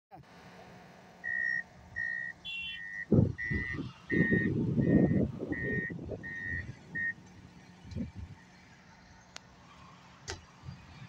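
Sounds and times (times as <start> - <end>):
reversing alarm beeps: 1.2 - 7.2
low rumbling bursts: 1.2 - 8.5.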